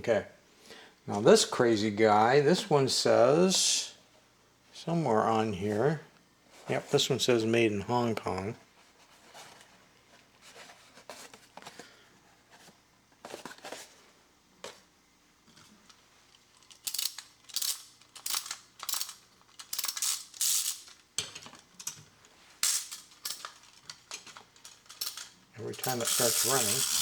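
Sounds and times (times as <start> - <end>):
wind-up key ratcheting clicks: 16.7 - 21.0, 24.7 - 27.0.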